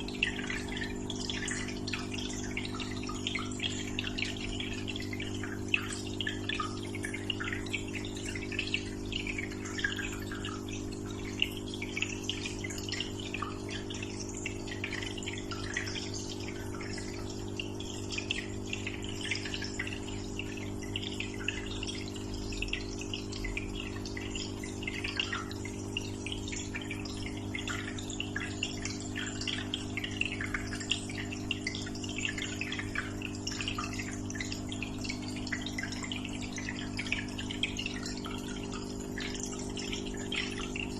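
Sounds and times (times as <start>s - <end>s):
aquarium water splashing and bubbling: 0.0s - 40.9s
small water drips: 0.0s - 40.9s
tank pump humming: 0.0s - 40.9s.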